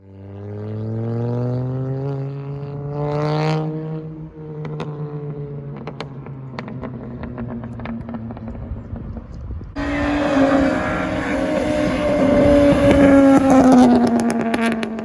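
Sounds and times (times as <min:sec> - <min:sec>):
exhaust pops and crackles: 0:05.7 - 0:15.0
car accelerating past: 0:09.7 - 0:15.0.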